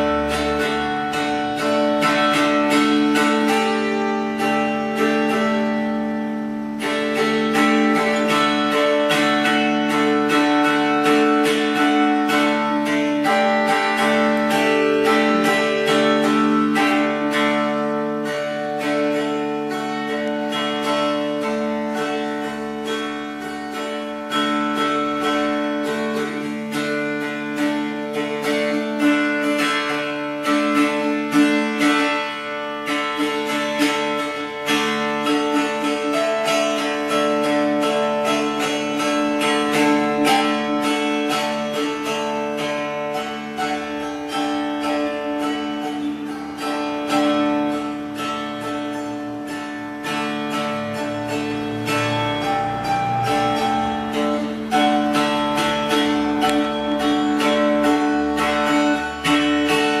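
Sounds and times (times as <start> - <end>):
plucked string instrument music: 0.0 - 60.0.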